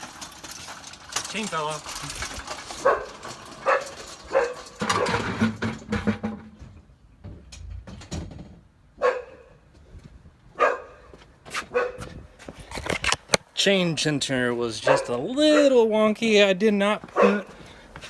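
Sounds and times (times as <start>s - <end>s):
dog barking: 2.8s - 5.2s, 9.0s - 9.6s, 10.6s - 11.0s, 11.7s - 12.1s, 14.8s - 15.8s, 17.2s - 17.5s.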